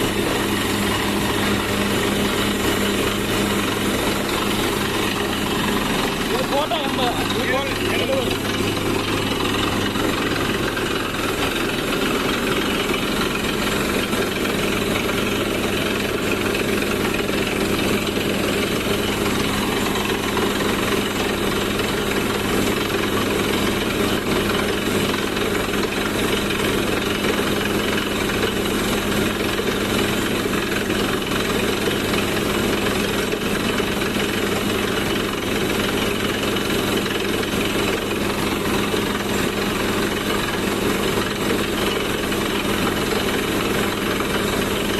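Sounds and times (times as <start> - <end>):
hammering rattle: 0.0 - 29.9
drilling rig engine drone: 0.0 - 44.9.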